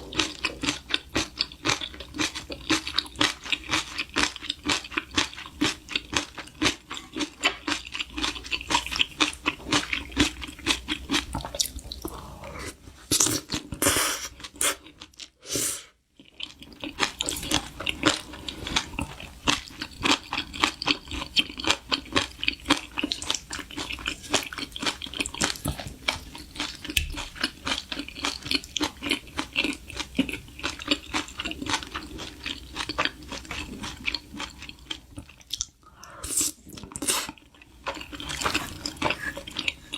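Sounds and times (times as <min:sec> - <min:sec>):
crunchy chewing of food: 0:00.0 - 0:15.4, 0:16.2 - 0:39.9.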